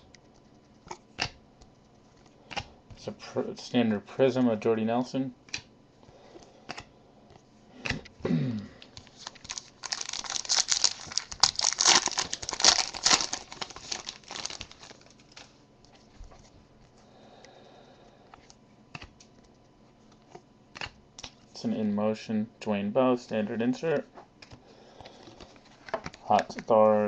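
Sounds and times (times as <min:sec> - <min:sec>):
foil wrapper crinkling and tearing: 0:09.0 - 0:15.5.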